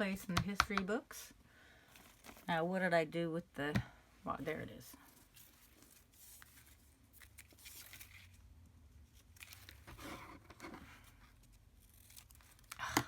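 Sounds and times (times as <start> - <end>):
rustling of paper: 1.8 - 2.5, 4.9 - 12.9.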